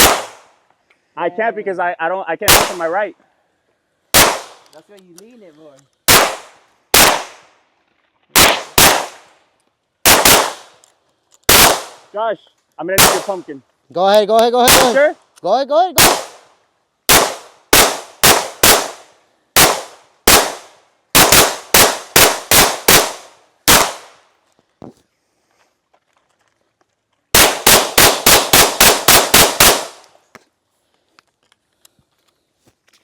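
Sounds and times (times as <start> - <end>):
gunshots: 0.0 - 0.5, 2.4 - 2.9, 4.1 - 4.6, 6.1 - 7.5, 8.3 - 9.3, 10.0 - 10.8, 11.5 - 12.1, 13.0 - 13.5, 14.6 - 15.1, 16.0 - 16.5, 17.1 - 24.2, 27.3 - 30.1.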